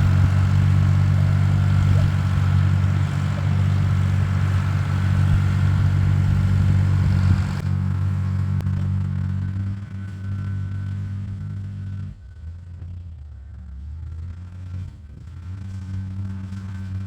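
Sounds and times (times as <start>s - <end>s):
grading blade scraping dirt: 0.0s - 8.8s
tractor engine running: 0.0s - 17.0s.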